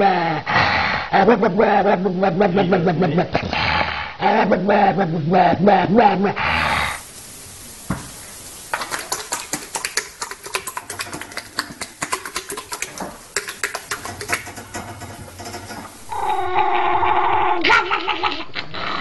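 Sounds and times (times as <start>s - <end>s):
rapid irregular clicking and scratching: 8.8s - 16.0s
animal cry with wavering pitch: 16.0s - 19.0s.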